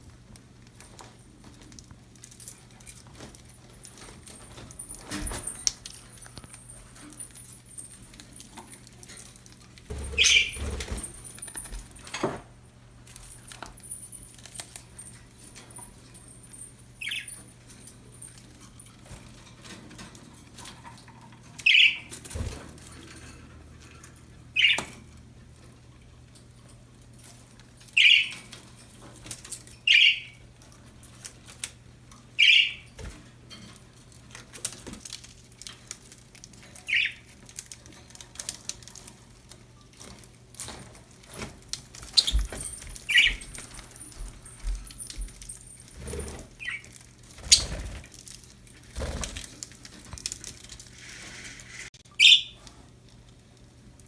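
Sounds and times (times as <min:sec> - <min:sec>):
budgerigar chirps: 0:52.2 - 0:52.6.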